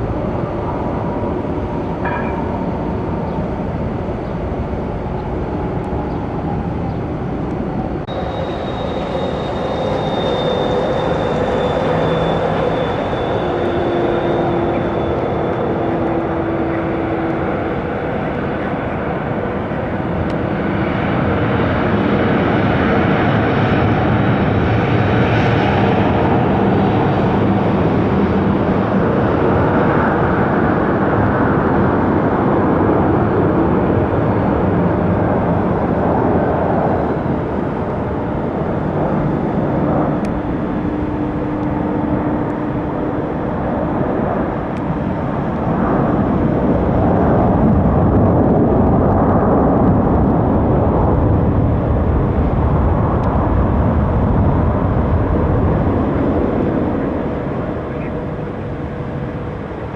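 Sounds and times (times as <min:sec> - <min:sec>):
aircraft engines running: 0:00.0 - 0:59.9.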